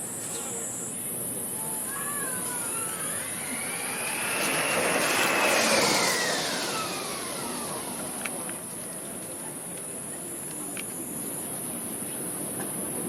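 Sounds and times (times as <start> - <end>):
electric race car whining past: 1.5 - 9.2.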